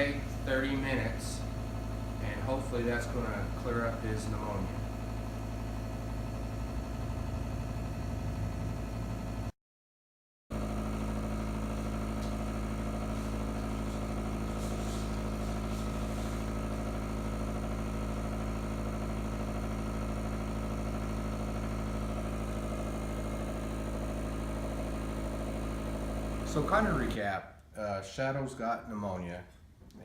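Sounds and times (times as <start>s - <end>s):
nebulizer compressor humming: 0.0s - 9.5s, 10.5s - 27.2s.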